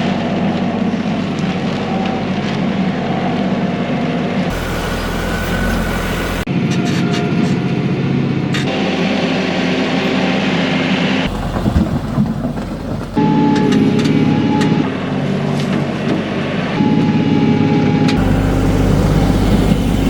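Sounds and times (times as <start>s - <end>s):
tractor diesel engine running: 4.5s - 6.5s, 11.3s - 13.2s, 18.2s - 20.0s.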